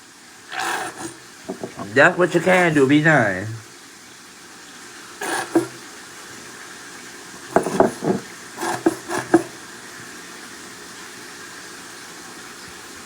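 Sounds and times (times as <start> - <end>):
pots and utensils clattering: 0.5 - 2.7, 5.2 - 5.8, 7.4 - 9.7.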